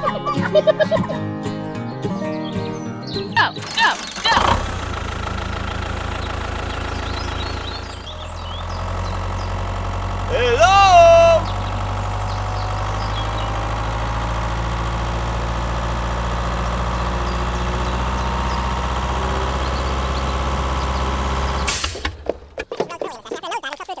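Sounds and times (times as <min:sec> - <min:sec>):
engine idling: 0:03.6 - 0:22.7.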